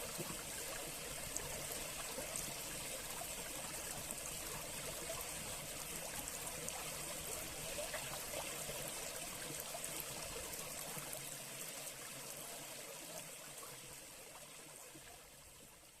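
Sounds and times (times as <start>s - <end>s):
brook flowing: 0.0s - 16.0s.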